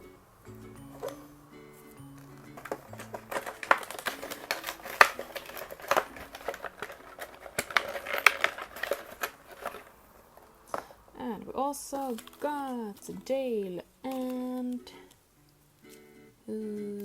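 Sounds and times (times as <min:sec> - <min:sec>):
plastic packaging crinkling: 0:00.8 - 0:01.4, 0:02.0 - 0:11.1, 0:11.7 - 0:15.2.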